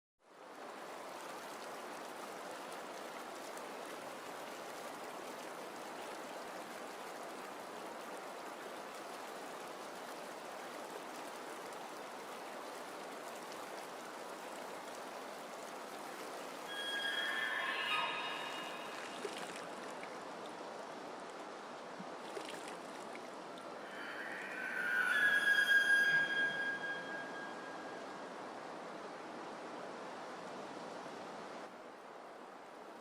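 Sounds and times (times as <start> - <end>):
running water: 0.3 - 33.0.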